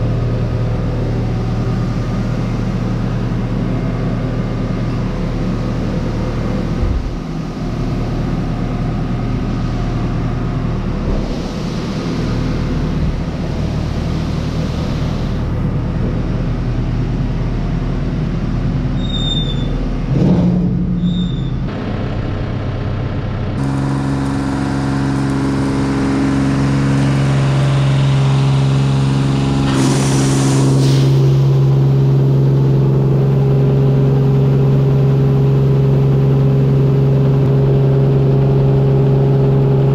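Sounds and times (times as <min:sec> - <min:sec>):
combine harvester drone: 0:00.0 - 0:39.9.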